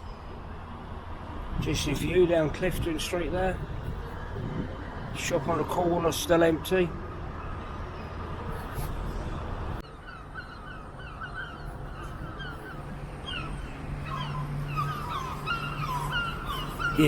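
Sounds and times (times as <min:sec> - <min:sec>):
street and traffic noise: 0:00.0 - 0:17.0
gulls calling: 0:09.8 - 0:17.0.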